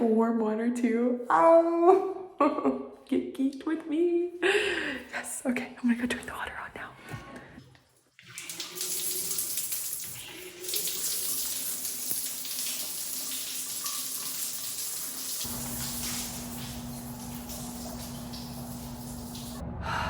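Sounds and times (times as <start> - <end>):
shower water running: 8.2 - 19.6
low steady hum: 15.5 - 20.0.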